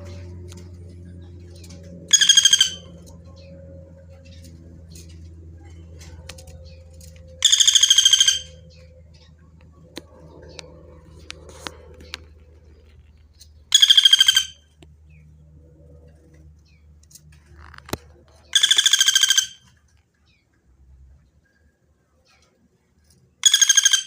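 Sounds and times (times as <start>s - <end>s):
woodpecker rattling trills: 0.0s - 15.3s, 18.5s - 19.8s, 23.4s - 24.0s.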